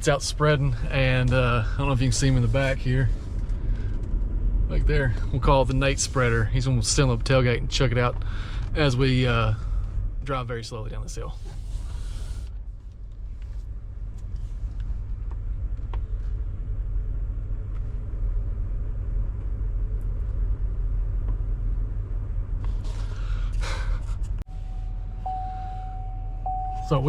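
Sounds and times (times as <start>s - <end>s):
truck engine rumbling: 0.0s - 27.0s
steady high tone: 24.5s - 27.0s.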